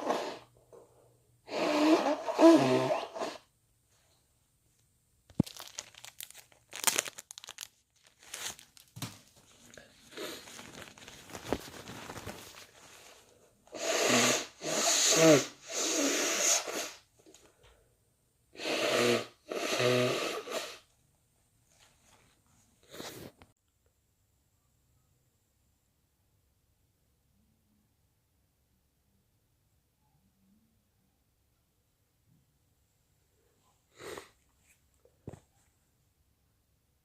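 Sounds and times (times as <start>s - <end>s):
person blowing nose: 0.0s - 0.5s, 1.5s - 3.5s, 10.1s - 10.7s, 13.7s - 17.1s, 18.6s - 20.9s, 22.8s - 23.4s, 33.9s - 34.4s
tissue rustling and crinkling: 5.3s - 13.4s.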